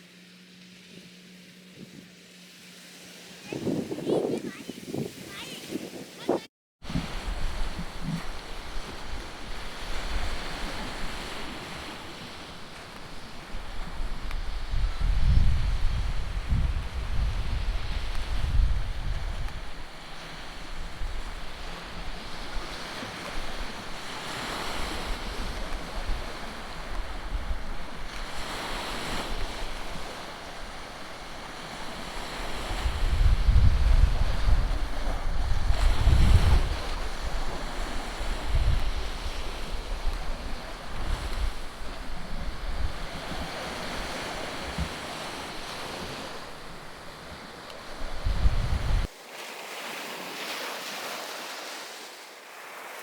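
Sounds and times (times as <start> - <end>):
sea waves washing onto beach: 0.0 - 53.0
wind buffeting microphone: 3.4 - 11.9, 13.0 - 23.8, 32.2 - 49.1.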